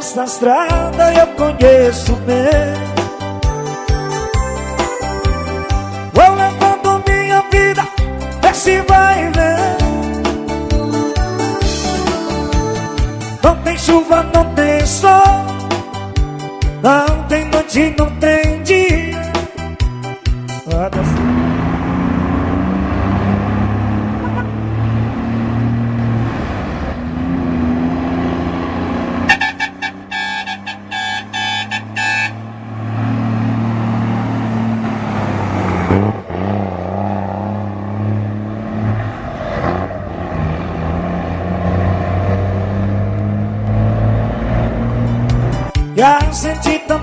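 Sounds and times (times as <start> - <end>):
truck diesel engine rumbling: 0.0 - 47.0
multi-tone horn pulsing: 24.0 - 24.8, 29.2 - 33.2.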